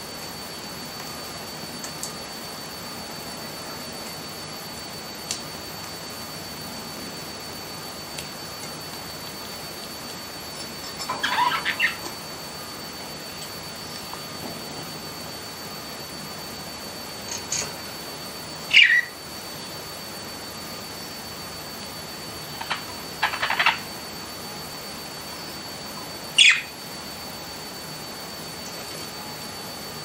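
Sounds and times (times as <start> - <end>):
faint high whine: 0.0 - 30.0
budgerigars chirping: 11.2 - 12.0, 18.7 - 19.1.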